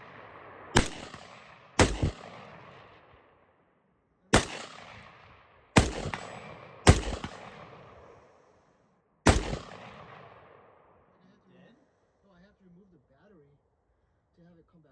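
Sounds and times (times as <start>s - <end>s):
rifle shots with echo: 0.0s - 3.6s, 4.3s - 11.4s.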